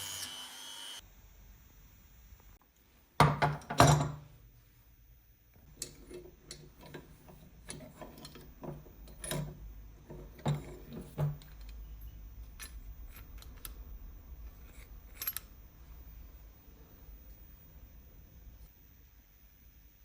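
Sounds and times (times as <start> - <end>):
small metal parts clicking: 5.6 - 9.6, 10.4 - 15.6.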